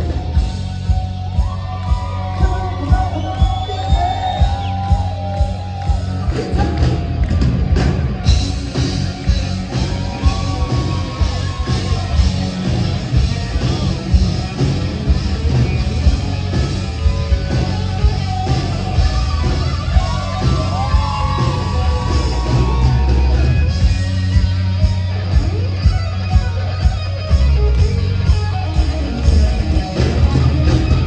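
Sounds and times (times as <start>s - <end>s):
hard rock band playing live: 0.0s - 31.0s.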